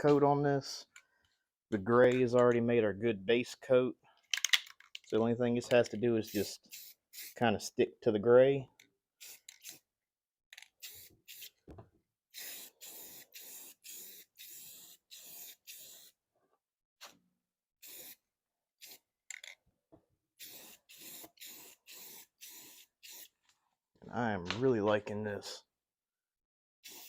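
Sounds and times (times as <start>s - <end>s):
spray paint hissing: 6.4s - 7.4s, 10.8s - 11.5s, 12.4s - 16.1s, 17.8s - 18.2s, 18.8s - 19.0s, 20.4s - 23.3s.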